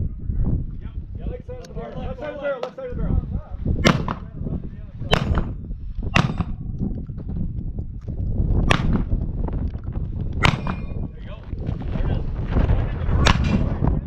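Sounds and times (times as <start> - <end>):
shotgun shots: 3.8 - 4.4, 5.1 - 6.7, 8.6 - 9.2, 10.4 - 11.1, 13.2 - 13.8.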